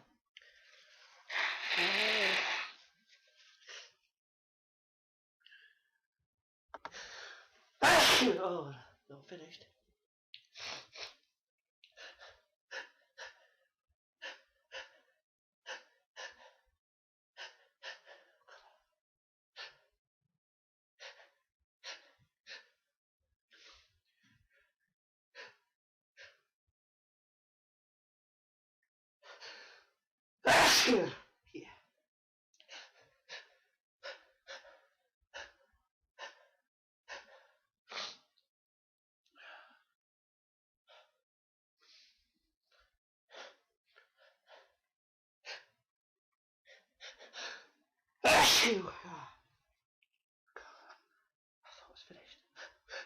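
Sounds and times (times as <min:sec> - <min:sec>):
person sneezing: 0:01.3 - 0:02.8, 0:07.8 - 0:08.5, 0:30.5 - 0:31.2, 0:48.2 - 0:49.0.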